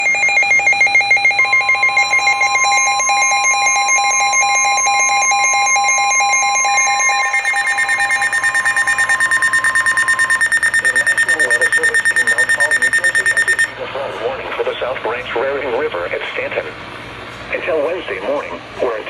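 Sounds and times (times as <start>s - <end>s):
rapid electronic beeping: 0.0s - 13.7s
steady warning alarm tone: 0.0s - 13.8s.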